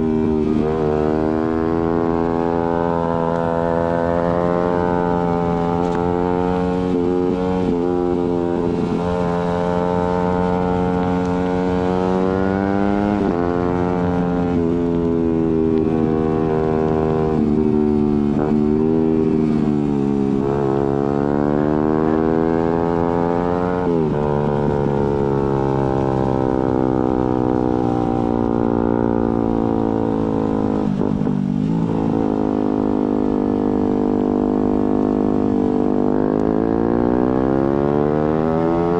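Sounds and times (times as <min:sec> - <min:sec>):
motorcycle engine revving through gears: 0:00.0 - 0:38.9
road noise: 0:00.0 - 0:38.9
wind noise: 0:00.0 - 0:38.9.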